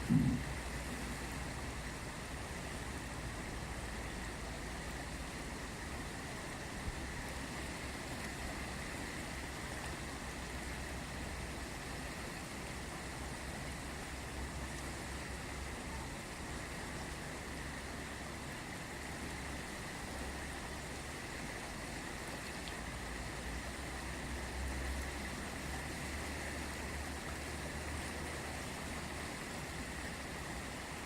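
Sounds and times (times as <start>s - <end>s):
low rumble: 0.0s - 0.6s
river water rushing: 0.0s - 31.0s.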